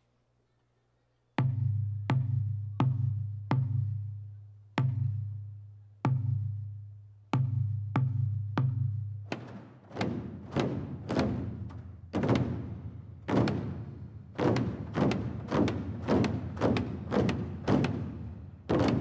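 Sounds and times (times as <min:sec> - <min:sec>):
large drums booming: 0:09.3 - 0:19.0.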